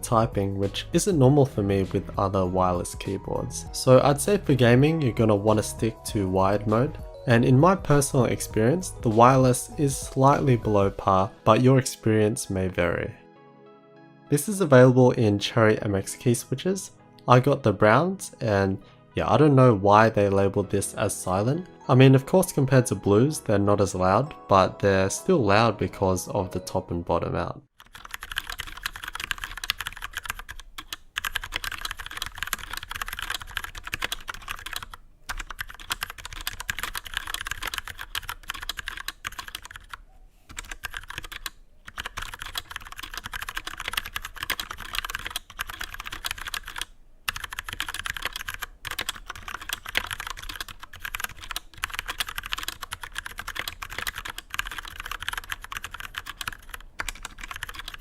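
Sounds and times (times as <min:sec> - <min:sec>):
fast typing on mechanical keyboard: 0:27.8 - 0:58.0.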